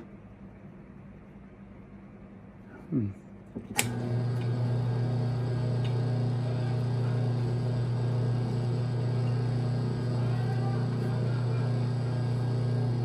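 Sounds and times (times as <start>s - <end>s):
wire stripping machine motor humming: 3.6s - 13.0s.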